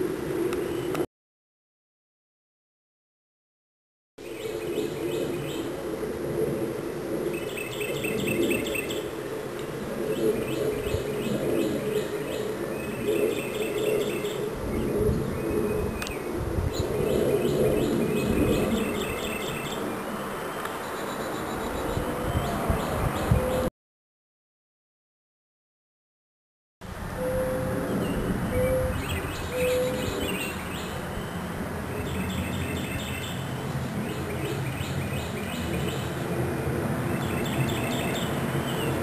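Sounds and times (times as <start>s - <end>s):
low jet drone overhead: 0.0s - 1.1s, 4.2s - 23.7s, 26.8s - 39.0s
small birds chirping: 7.3s - 9.1s, 10.0s - 23.7s, 27.2s - 36.2s, 37.1s - 39.0s.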